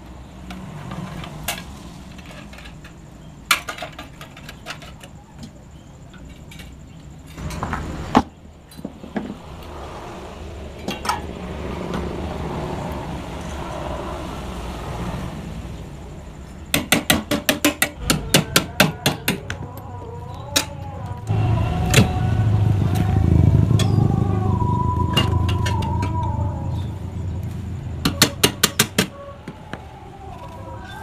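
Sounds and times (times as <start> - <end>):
hammer blows on metal: 16.8 - 19.8.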